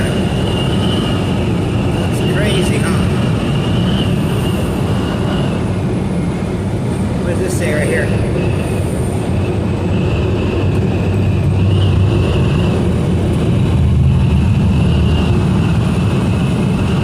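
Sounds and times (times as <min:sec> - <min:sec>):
truck engine and road drone: 0:00.0 - 0:17.0.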